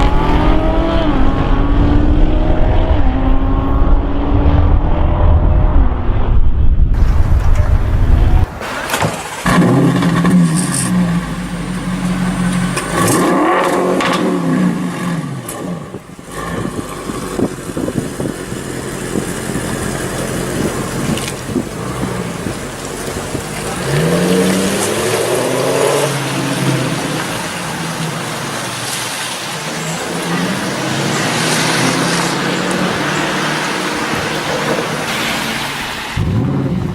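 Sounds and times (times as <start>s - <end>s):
car engine revving: 0.0s - 6.1s, 7.0s - 36.9s
exhaust cracks: 6.8s - 29.5s.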